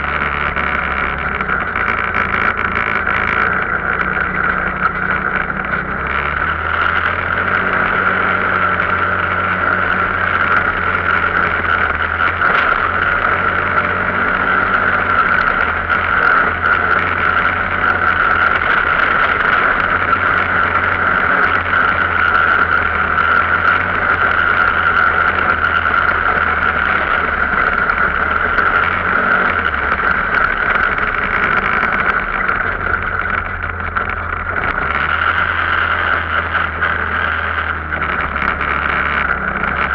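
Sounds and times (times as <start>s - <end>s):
off-road vehicle engine running: 0.0s - 39.9s.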